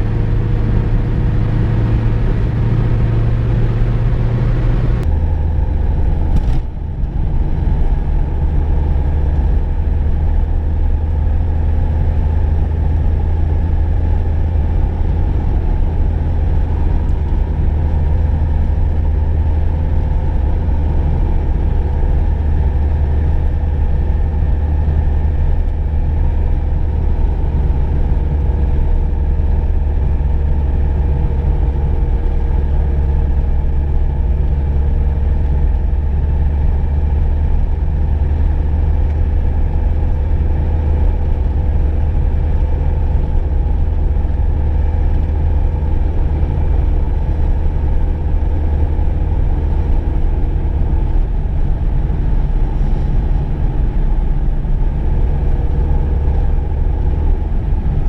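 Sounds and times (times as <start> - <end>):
car engine and road rumble: 0.0 - 58.0.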